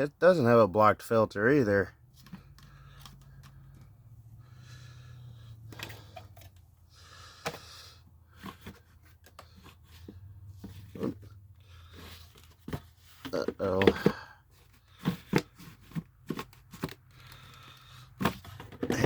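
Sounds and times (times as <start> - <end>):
plastic parts clicking and scraping: 2.1 - 4.0, 5.4 - 6.8, 7.4 - 19.0.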